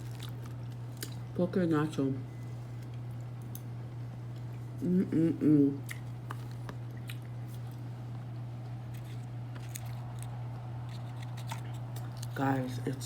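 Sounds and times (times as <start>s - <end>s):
person chewing crisp chip: 0.0s - 1.3s, 5.8s - 7.9s, 8.8s - 12.4s
steady low hum: 0.0s - 13.0s.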